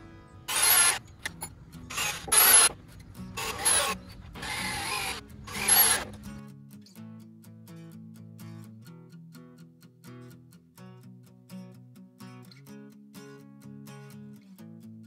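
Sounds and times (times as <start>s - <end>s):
hand tool rasping on wood: 0.5s - 1.0s, 1.9s - 2.8s, 3.4s - 6.2s.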